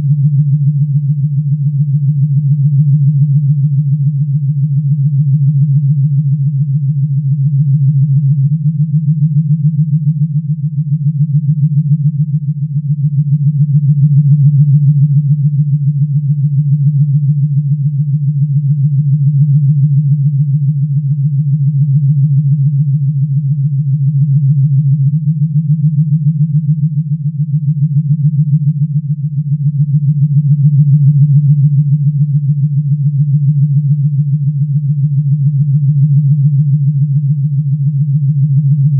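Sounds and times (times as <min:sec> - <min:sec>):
low fluttering electronic hum: 0:00.0 - 0:38.9.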